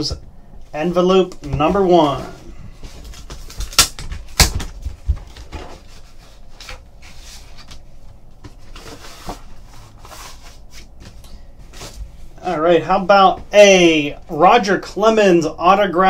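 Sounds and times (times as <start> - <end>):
paper envelope rustling: 1.4 - 12.0.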